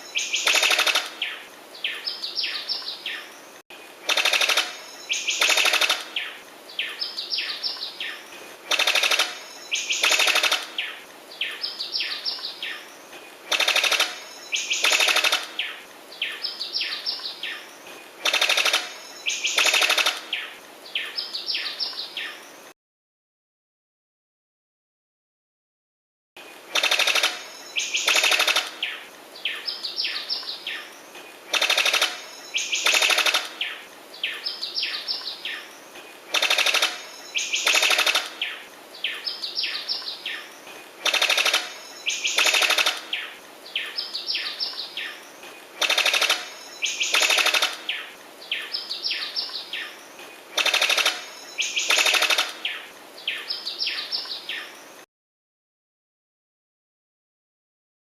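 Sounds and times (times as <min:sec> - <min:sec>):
bird rattling call: 0:00.1 - 0:01.4, 0:04.1 - 0:06.4, 0:08.7 - 0:11.0, 0:13.5 - 0:15.8, 0:18.2 - 0:20.4, 0:26.7 - 0:29.0, 0:31.5 - 0:33.8, 0:36.3 - 0:38.6, 0:41.0 - 0:43.4, 0:45.8 - 0:48.1, 0:50.5 - 0:52.9.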